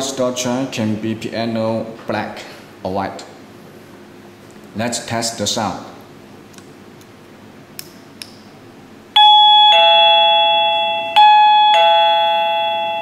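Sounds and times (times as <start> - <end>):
electronic ding-dong door chime: 9.2 - 13.0.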